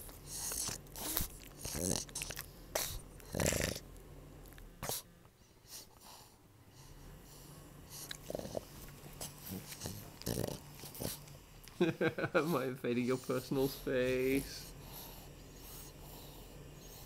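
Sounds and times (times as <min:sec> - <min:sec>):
dog snorting and snuffling: 0:00.0 - 0:03.9, 0:04.8 - 0:05.1, 0:07.4 - 0:11.4.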